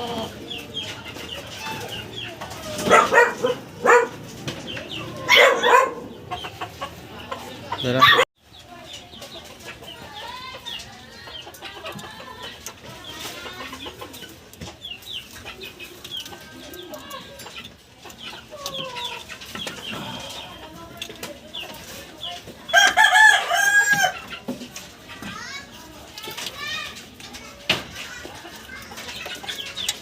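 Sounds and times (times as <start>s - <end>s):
chickens clucking: 0.0s - 30.0s
rooster crowing: 22.8s - 24.2s.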